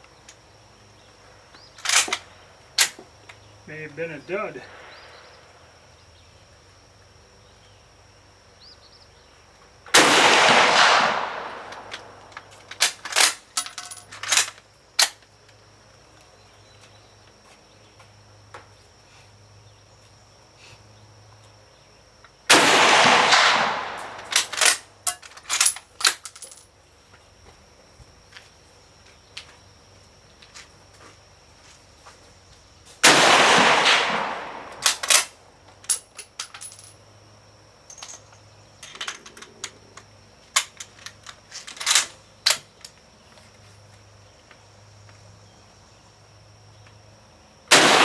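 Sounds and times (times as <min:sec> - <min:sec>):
rifle shots echoing: 0:09.9 - 0:13.4, 0:22.5 - 0:24.9, 0:33.0 - 0:35.3, 0:47.7 - 0:48.0.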